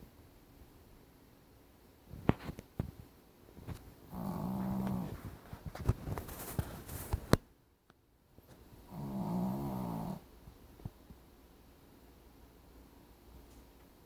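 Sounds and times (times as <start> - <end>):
pet snoring: 4.1 - 5.4, 8.8 - 10.3.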